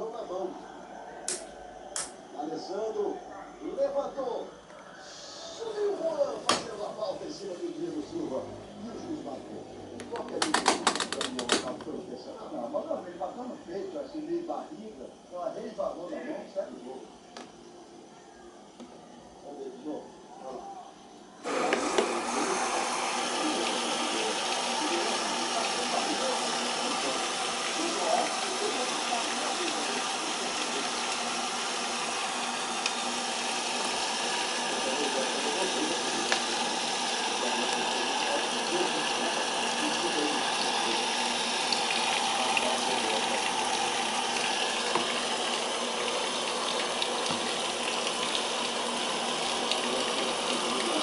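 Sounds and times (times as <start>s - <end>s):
water pouring into washing machine: 21.4s - 51.0s.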